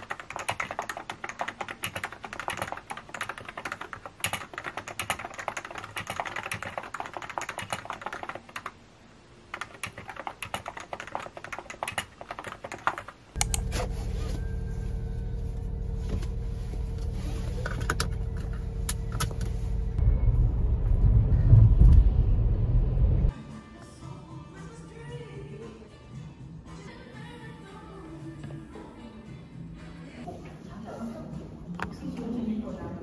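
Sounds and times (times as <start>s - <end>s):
typing on computer keyboard: 0.0s - 8.8s, 9.5s - 13.6s
steady low rumble: 13.4s - 23.3s.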